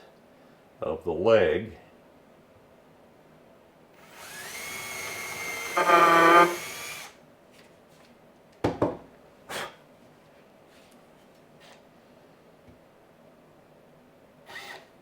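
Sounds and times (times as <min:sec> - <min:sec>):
cordless drill driving a screw: 0:04.0 - 0:07.2, 0:14.5 - 0:14.9.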